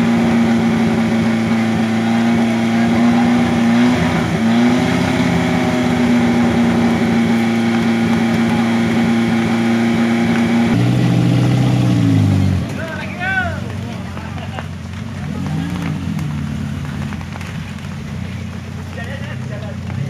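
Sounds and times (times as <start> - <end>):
off-road engine at high revs: 0.0 - 20.0.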